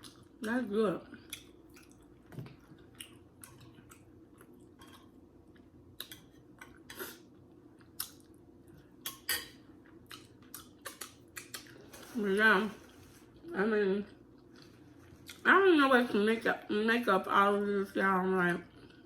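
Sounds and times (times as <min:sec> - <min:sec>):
chewing with wet mouth smacks: 0:01.2 - 0:07.2, 0:07.8 - 0:11.8.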